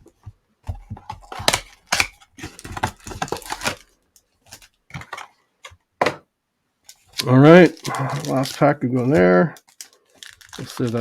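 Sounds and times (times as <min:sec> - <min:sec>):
packaging tearing and crinkling: 0:01.2 - 0:04.8, 0:06.9 - 0:11.0.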